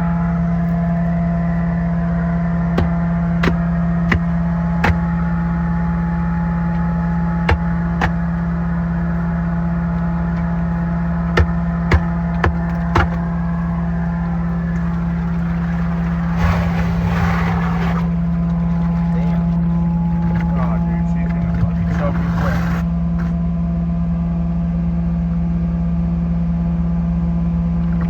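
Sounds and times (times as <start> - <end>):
vacuum truck drone: 0.0 - 25.3
short sharp knocks: 2.8 - 5.0.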